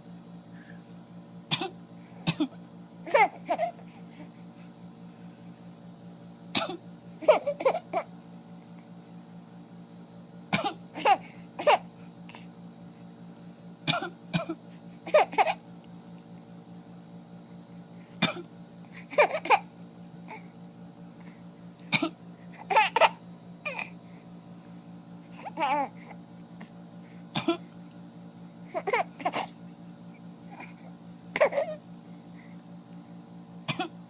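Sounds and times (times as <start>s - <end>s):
steady low hum: 0.0s - 34.0s
coughs: 1.5s - 3.7s, 6.5s - 8.1s, 10.5s - 11.8s, 13.8s - 15.6s, 18.2s - 18.5s, 21.9s - 23.8s, 27.3s - 27.7s, 30.6s - 31.8s, 33.7s - 34.0s
small child giggling: 3.0s - 3.8s, 7.2s - 8.1s, 11.0s - 11.9s, 15.1s - 15.6s, 19.0s - 19.7s, 22.6s - 23.8s, 25.4s - 25.9s, 28.7s - 29.5s, 31.4s - 31.8s.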